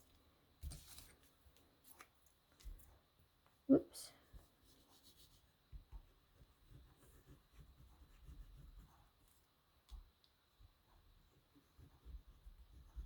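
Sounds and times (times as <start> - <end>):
cardstock rustling on table: 0.6 - 2.1.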